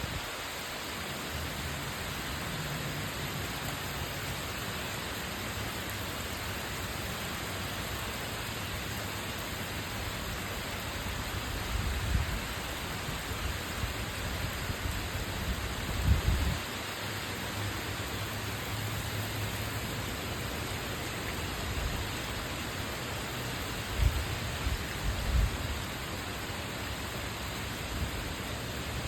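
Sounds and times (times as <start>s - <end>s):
heavy rain hissing: 0.0s - 29.0s.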